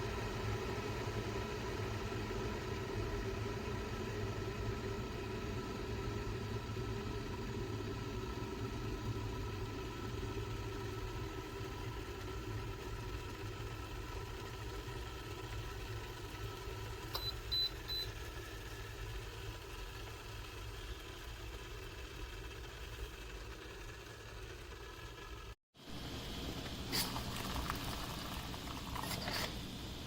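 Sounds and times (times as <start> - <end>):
kettle heating water rumble: 0.0 - 30.0
short high kettle beeps: 17.1 - 18.1.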